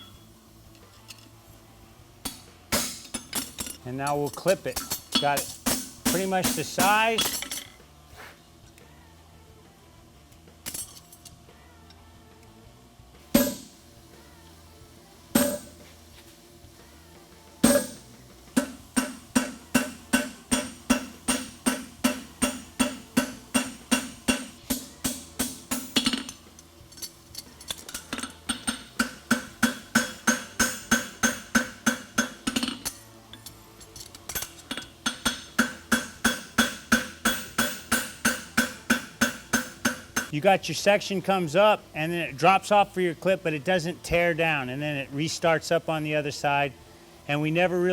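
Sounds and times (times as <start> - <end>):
hammer striking horseshoe on anvil: 0.0 - 0.3, 2.2 - 7.8, 13.4 - 13.8, 15.4 - 15.9, 17.6 - 40.4.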